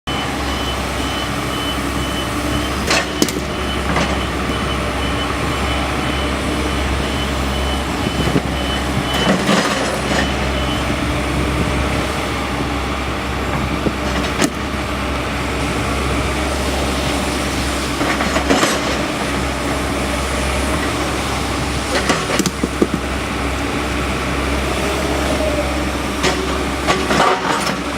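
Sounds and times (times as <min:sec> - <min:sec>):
warning alarm beeping: 0:00.1 - 0:11.1
excavator engine running: 0:00.1 - 0:27.9.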